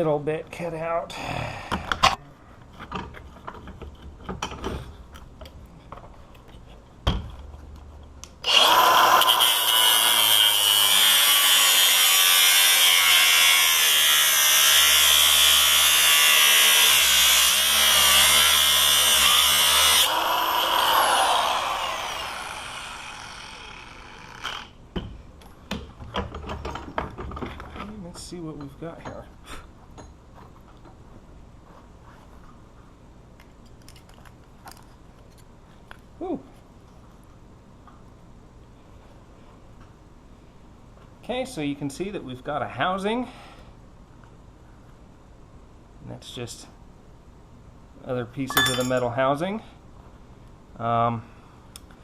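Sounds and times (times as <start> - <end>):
cutoff wheel grinding steel: 8.4 - 24.8.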